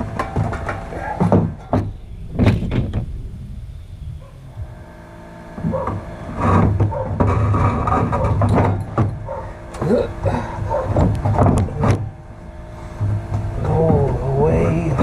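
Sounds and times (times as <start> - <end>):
sharp knocks: 0.0 - 3.2, 5.6 - 10.0, 10.6 - 12.2
scraping and rustling of radiator: 0.0 - 15.0.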